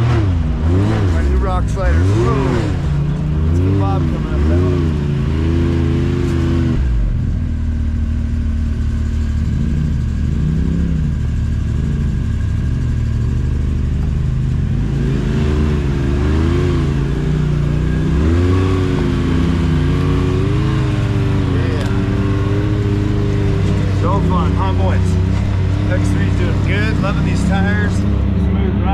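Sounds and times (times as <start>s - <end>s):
off-road vehicle engine revving: 0.0s - 28.9s.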